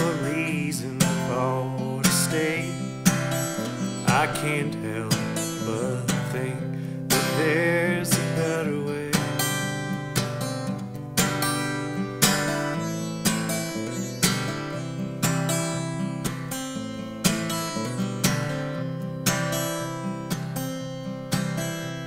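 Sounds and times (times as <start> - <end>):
acoustic guitar strumming: 0.0 - 22.0.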